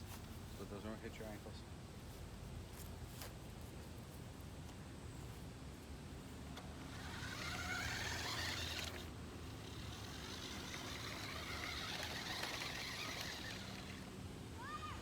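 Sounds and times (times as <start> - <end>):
toy truck motor whining: 6.6 - 15.0.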